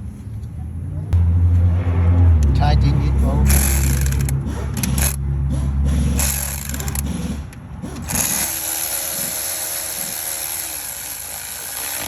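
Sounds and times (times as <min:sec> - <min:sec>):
power tool whining: 0:03.5 - 0:12.0.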